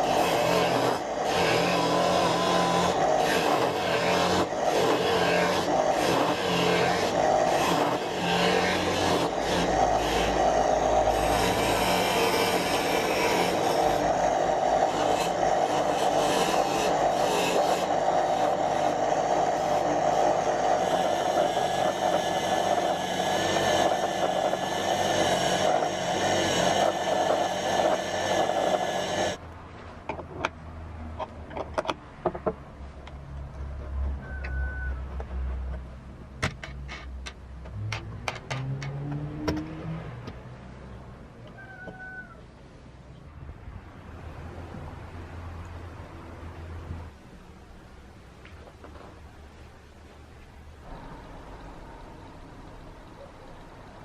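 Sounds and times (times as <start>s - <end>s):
angle grinder running under load: 0.0s - 29.4s.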